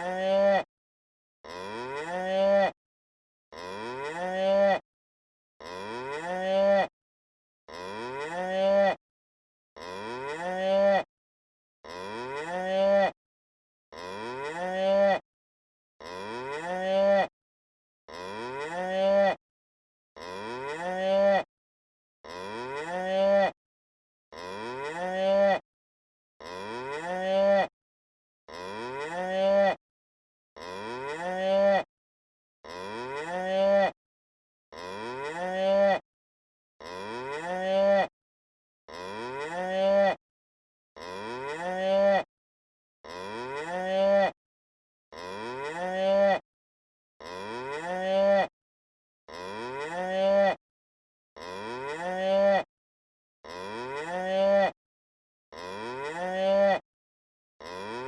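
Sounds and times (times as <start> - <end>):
cow mooing: 0.0 - 0.6, 1.5 - 2.7, 3.6 - 4.8, 5.6 - 6.8, 7.7 - 8.9, 9.8 - 11.0, 11.9 - 13.1, 14.0 - 15.2, 16.0 - 17.2, 18.1 - 19.3, 20.2 - 21.4, 22.3 - 23.5, 24.4 - 25.6, 26.4 - 27.6, 28.5 - 29.7, 30.6 - 31.8, 32.7 - 33.9, 34.8 - 36.0, 36.9 - 38.0, 39.0 - 40.1, 41.0 - 42.2, 43.1 - 44.3, 45.2 - 46.4, 47.3 - 48.4, 49.4 - 50.5, 51.4 - 52.6, 53.5 - 54.7, 55.6 - 56.8, 57.7 - 58.0.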